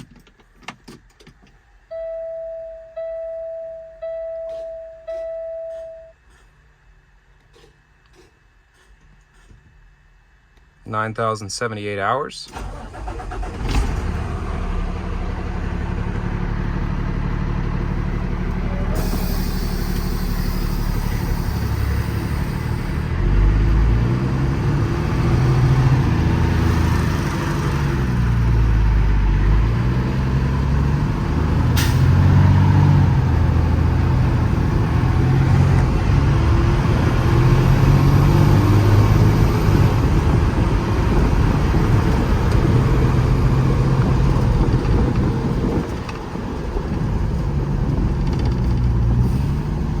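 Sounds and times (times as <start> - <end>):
diesel truck engine pulling away: 12.5 - 50.0.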